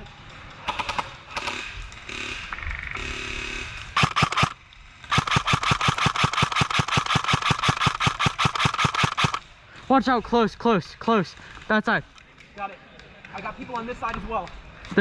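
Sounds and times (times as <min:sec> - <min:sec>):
airsoft rifle firing full auto: 0:03.0 - 0:09.4.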